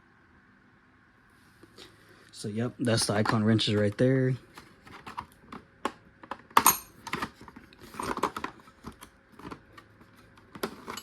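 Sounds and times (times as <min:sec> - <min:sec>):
tools clattering: 0:06.5 - 0:07.3, 0:10.6 - 0:11.0.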